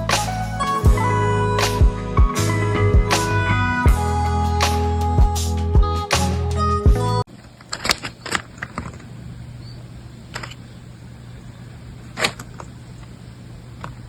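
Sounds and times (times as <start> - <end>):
steady low hum: 7.3 - 14.0
paper crinkling and clicks: 10.3 - 10.6, 12.0 - 13.2.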